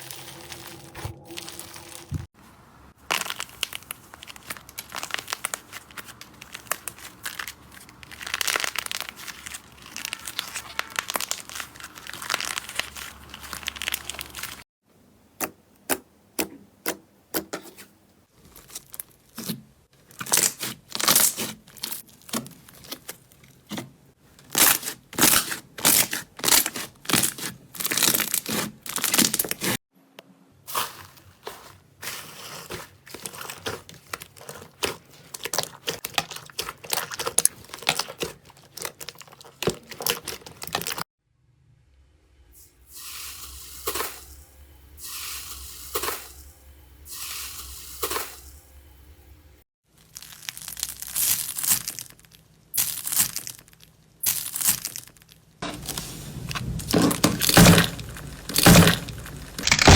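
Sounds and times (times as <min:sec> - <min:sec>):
slime crackling when squeezed: 0:03.0 - 0:14.6.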